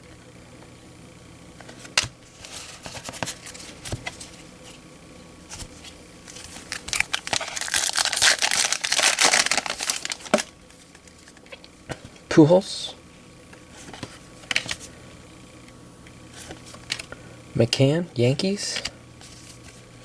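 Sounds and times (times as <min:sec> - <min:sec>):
cards clicking and rustling: 0:01.6 - 0:04.8, 0:05.5 - 0:12.2, 0:13.8 - 0:14.9, 0:16.4 - 0:17.1, 0:18.6 - 0:19.8
foil wrapper crinkling: 0:05.5 - 0:11.6.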